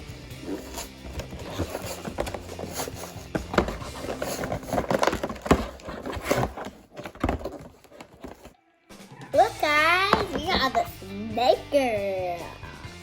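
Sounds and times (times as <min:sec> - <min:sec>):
background music: 0:00.0 - 0:13.0
packaging clicks and crinkles: 0:00.5 - 0:08.5.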